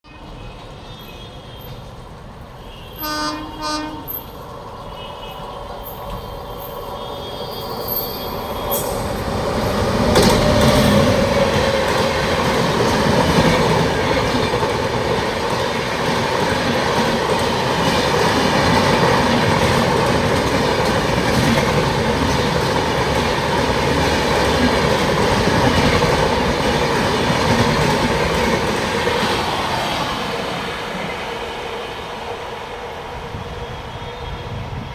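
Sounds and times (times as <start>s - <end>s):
train passing rumble: 0.0s - 34.9s
locomotive horn blasts: 2.6s - 4.3s.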